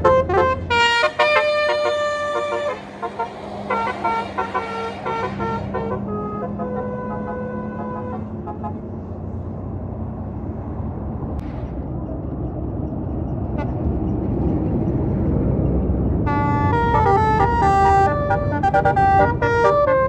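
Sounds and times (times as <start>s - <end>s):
musical bus horn: 0.0s - 8.9s, 16.2s - 20.0s
bus engine: 0.0s - 20.0s
road noise: 0.0s - 20.0s.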